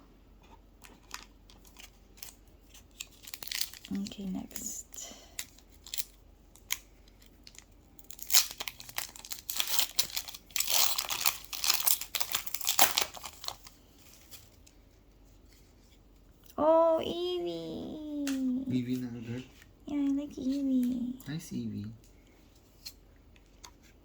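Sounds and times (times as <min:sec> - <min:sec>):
foil wrapper tearing and crinkling: 0:00.8 - 0:04.7, 0:05.3 - 0:14.6.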